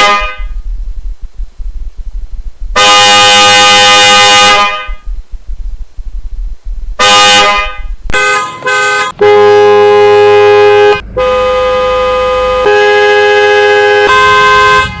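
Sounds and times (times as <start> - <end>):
car horn honking: 0.0 - 0.6, 2.8 - 5.1, 7.0 - 15.0.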